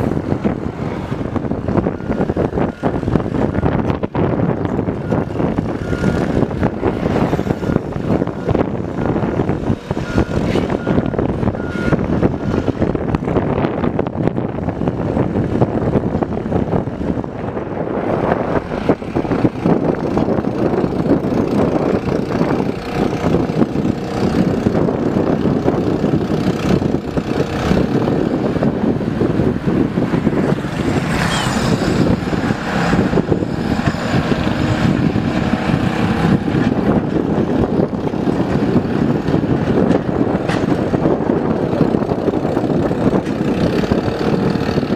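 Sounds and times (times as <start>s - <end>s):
excavator diesel engine running: 0.0s - 44.9s
knocks and clanks: 35.8s - 44.0s.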